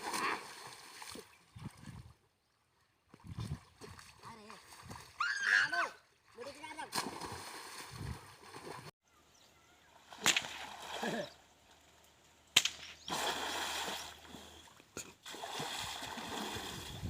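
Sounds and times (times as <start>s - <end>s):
water splashing from swimming: 6.2s - 8.9s, 13.1s - 17.0s.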